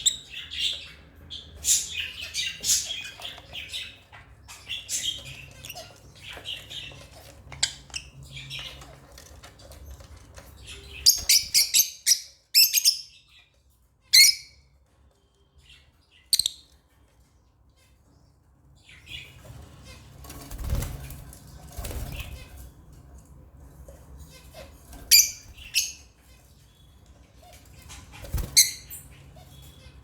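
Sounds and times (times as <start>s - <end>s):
lovebirds chirping: 0.0s - 9.2s, 9.8s - 13.5s, 15.4s - 16.8s, 24.3s - 30.0s.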